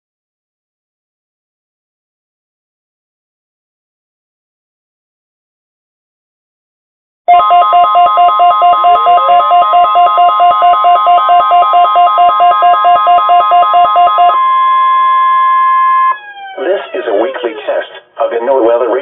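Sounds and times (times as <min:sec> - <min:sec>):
fast two-pitch alert beeping: 0:07.3 - 0:17.3
steady warning alarm tone: 0:07.3 - 0:17.5.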